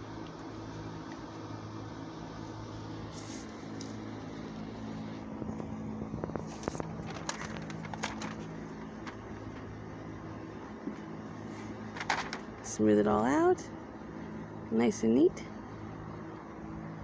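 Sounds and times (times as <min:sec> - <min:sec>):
steady low hum: 0:00.0 - 0:17.0
sticker crackling: 0:06.3 - 0:09.7, 0:11.9 - 0:12.6.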